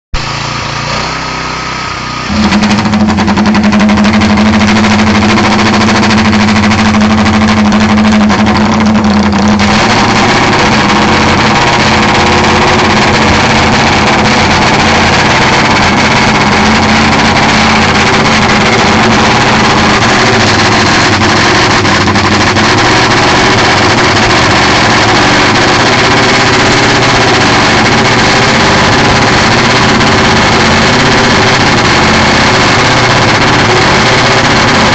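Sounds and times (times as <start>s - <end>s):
motorcycle engine revving: 0.2s - 34.9s.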